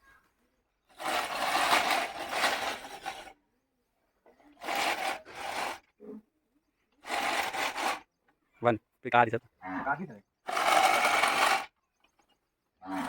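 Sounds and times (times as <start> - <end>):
push mower blades whirring: 0.9 - 3.3, 4.6 - 5.8, 7.0 - 8.0, 10.5 - 11.8.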